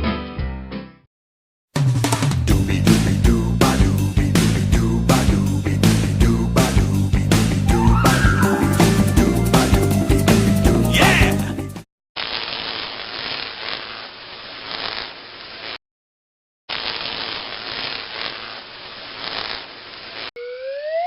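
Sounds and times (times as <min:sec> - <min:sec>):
smooth rising whistle: 0:07.6 - 0:09.5.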